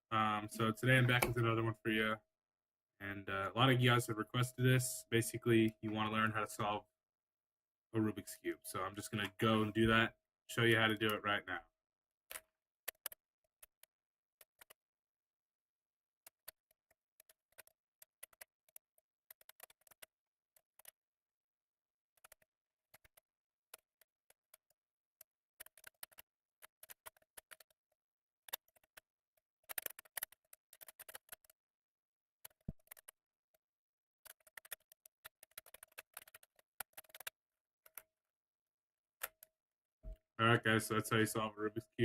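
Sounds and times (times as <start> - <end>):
puzzle cube plastic clicks: 25.6 - 27.8, 28.5 - 31.6, 32.4 - 33.2, 34.2 - 38.0.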